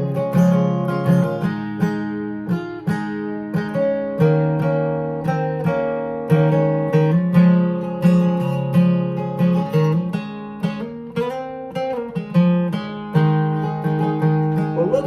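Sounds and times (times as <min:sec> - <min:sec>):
acoustic guitar strumming: 0:00.0 - 0:15.0.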